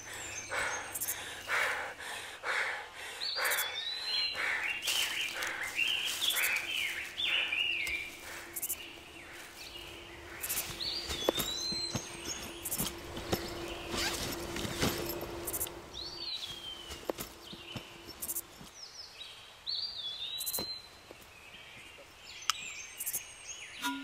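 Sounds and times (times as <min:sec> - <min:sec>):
birds chirping: 0:00.0 - 0:24.0
footsteps running through dry leaves: 0:04.4 - 0:08.6, 0:09.2 - 0:18.6.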